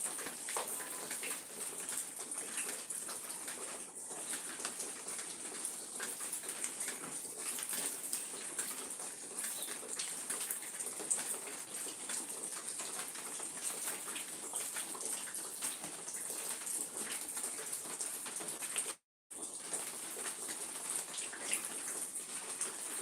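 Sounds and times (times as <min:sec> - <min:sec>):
small birds chirping: 0:09.3 - 0:10.0.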